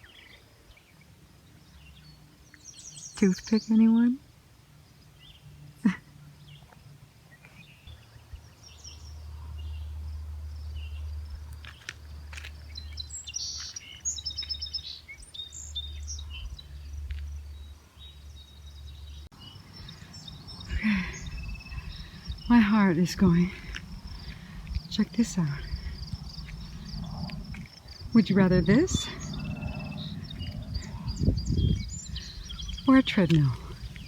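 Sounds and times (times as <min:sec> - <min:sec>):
birds chirping: 0:00.0 - 0:34.0
low steady rumble: 0:15.1 - 0:34.0.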